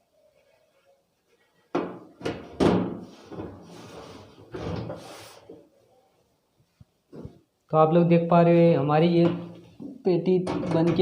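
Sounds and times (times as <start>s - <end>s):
sliding and scraping: 3.0s - 5.6s.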